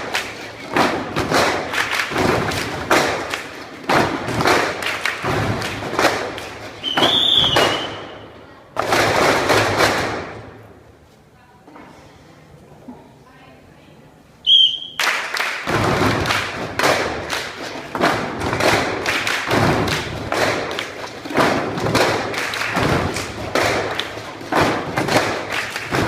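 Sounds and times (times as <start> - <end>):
group drumming on cans: 0.0 - 8.2, 8.8 - 10.5, 15.3 - 26.0
short whistle-like tone: 6.8 - 8.2, 14.4 - 15.0.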